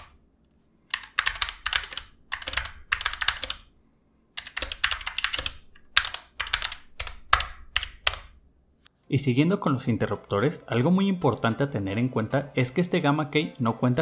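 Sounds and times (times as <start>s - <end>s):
keyboard keystroke clicks: 4.4s - 8.4s.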